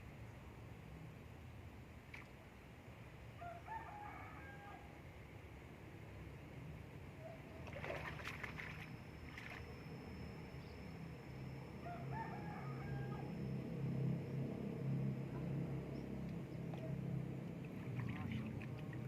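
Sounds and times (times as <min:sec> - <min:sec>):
rooster crowing: 0:03.4 - 0:05.0, 0:11.8 - 0:13.7
low hum: 0:05.1 - 0:19.0.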